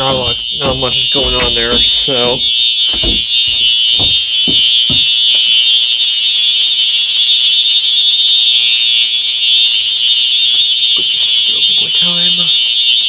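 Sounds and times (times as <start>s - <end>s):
high-pitched alarm horn: 0.0s - 13.0s
soft low thuds: 0.2s - 5.5s.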